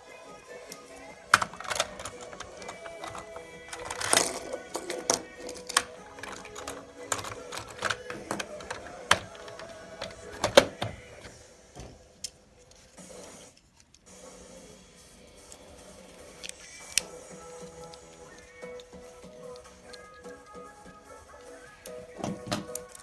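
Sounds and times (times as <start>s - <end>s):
irregular sharp clicks and knocks: 1.2s - 11.3s.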